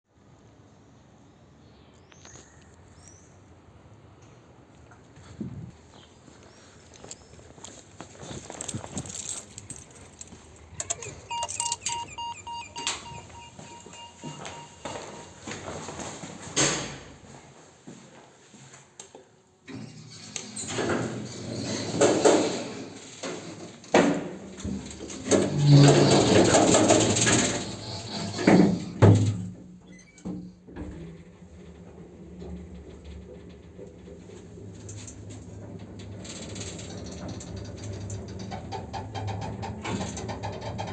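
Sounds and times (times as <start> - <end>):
rustling and light clattering: 4.3 - 10.9, 30.2 - 40.9
elevator doors rattling: 9.0 - 15.6, 20.1 - 29.6, 30.8 - 40.9
short electronic beeps: 10.8 - 15.5
elevator doors banging shut: 24.0 - 29.6.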